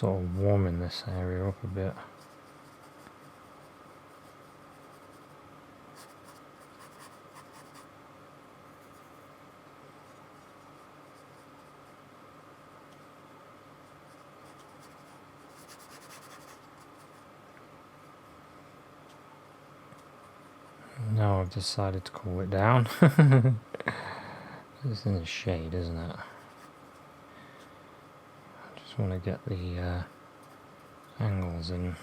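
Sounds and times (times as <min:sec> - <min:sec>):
low steady hum: 0:00.0 - 0:32.0
paintbrush scrubbing on canvas: 0:06.0 - 0:07.9, 0:13.9 - 0:17.3.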